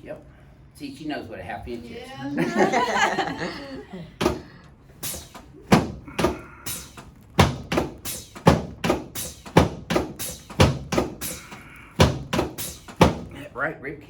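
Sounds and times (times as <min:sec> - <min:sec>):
sharp knocks on a treatment table: 0:04.2 - 0:04.5, 0:05.7 - 0:06.4, 0:07.4 - 0:11.4, 0:12.0 - 0:13.3.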